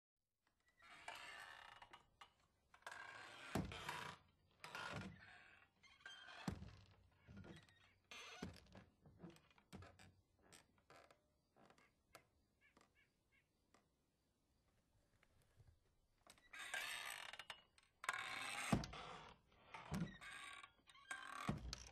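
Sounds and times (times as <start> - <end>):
wooden doors creaking: 2.8 - 12.2, 16.3 - 21.9.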